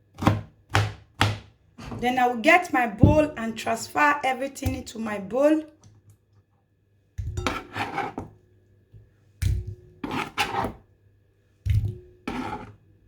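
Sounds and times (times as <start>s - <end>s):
scraping on cutting board: 7.4s - 8.3s, 10.0s - 10.8s, 12.2s - 12.8s.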